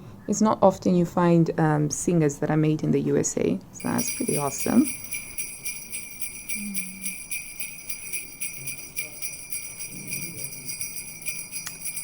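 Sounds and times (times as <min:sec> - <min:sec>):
sleigh bells jingling: 0:03.8 - 0:12.0.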